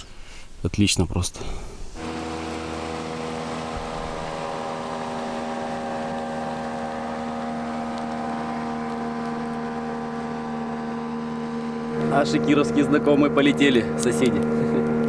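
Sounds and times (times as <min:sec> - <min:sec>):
motorboat engine running: 0:01.9 - 0:15.0.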